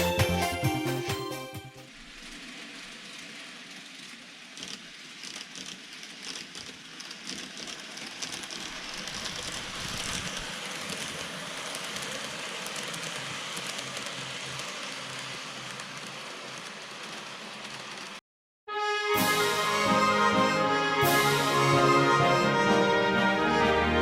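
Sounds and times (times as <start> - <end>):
model train rolling on track: 1.9 - 18.2
wheels clicking over rail joints: 1.9 - 18.2.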